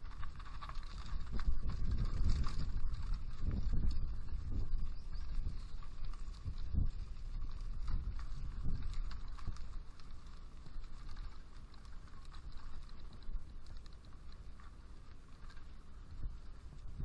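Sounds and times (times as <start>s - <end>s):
mountain bike rattling and clicking: 0.0s - 17.0s
air over microphone: 1.2s - 5.8s.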